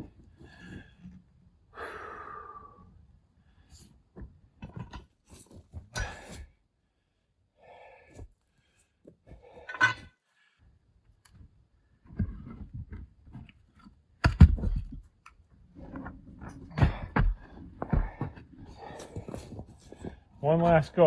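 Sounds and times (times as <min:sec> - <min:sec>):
man breathing hard: 0:01.7 - 0:03.8, 0:06.0 - 0:10.7, 0:16.7 - 0:20.2.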